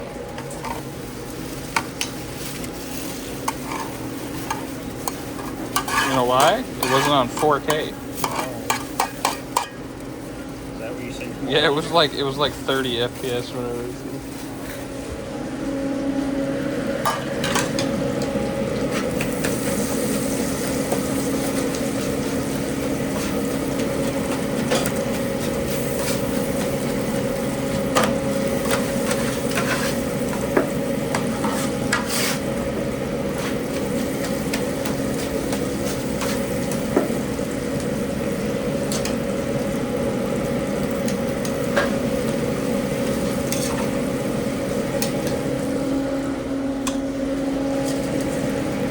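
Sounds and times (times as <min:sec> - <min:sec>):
food sizzling and frying: 0:00.0 - 0:48.9
utensils and pans clinking: 0:03.4 - 0:09.8, 0:17.0 - 0:19.8, 0:20.8 - 0:32.3, 0:40.8 - 0:44.0
steady hum: 0:03.4 - 0:48.9.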